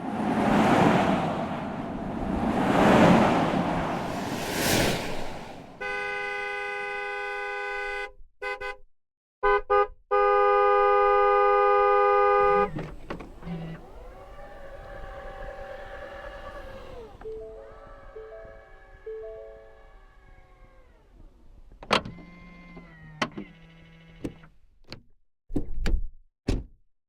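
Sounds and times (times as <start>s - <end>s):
vehicle whooshing past: 0.0s - 5.9s
car horn blasts: 5.8s - 8.8s, 9.4s - 12.8s
short horn toots: 5.8s - 8.8s.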